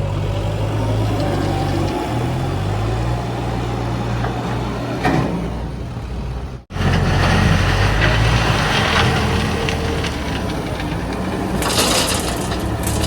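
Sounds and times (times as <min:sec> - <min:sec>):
diesel engine running under load: 0:00.0 - 0:13.0
bucket clattering and scraping stone: 0:08.0 - 0:13.0.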